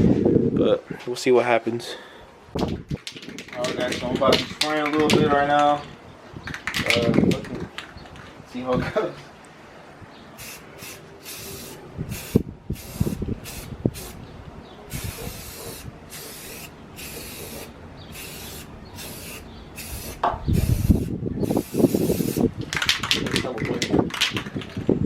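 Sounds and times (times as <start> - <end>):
spray paint can hissing: 10.4 - 14.2, 14.9 - 23.1.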